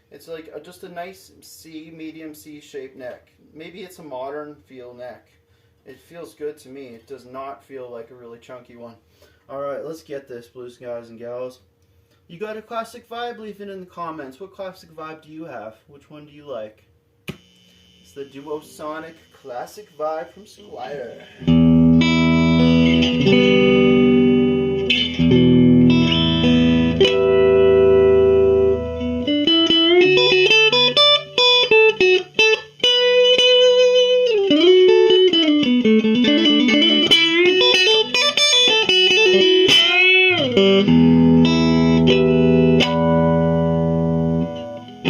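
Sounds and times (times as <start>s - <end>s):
electric guitar playing blues: 20.7s - 45.0s.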